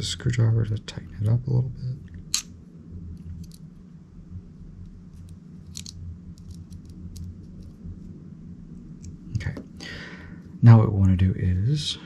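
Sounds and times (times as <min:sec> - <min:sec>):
steady low hum: 0:00.0 - 0:12.0
screwdriver clicks and scrapes: 0:05.2 - 0:07.3.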